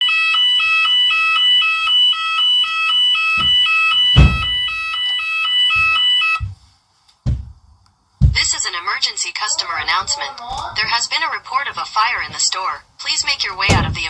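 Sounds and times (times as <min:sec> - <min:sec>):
fire alarm two-tone electronic sounder: 0:00.0 - 0:06.6
low thumps: 0:03.4 - 0:04.9, 0:05.7 - 0:08.6, 0:13.2 - 0:14.0.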